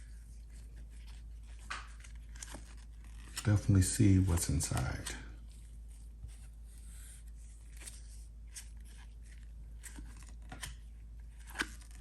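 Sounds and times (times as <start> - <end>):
cards rustling and ticking: 0.0 - 12.0
plastic wrapper crinkling and tearing: 0.4 - 5.8.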